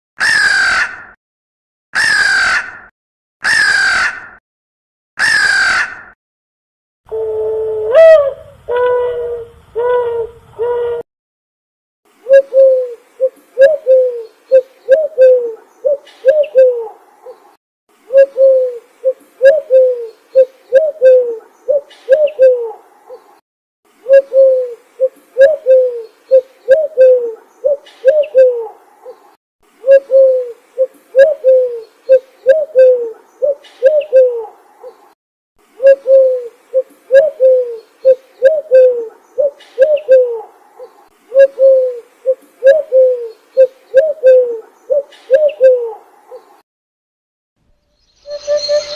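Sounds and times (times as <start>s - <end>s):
bird calling with hoot-like notes: 7.1s - 11.0s, 12.2s - 17.5s, 18.1s - 23.3s, 24.0s - 35.1s, 35.8s - 46.6s, 48.1s - 48.9s.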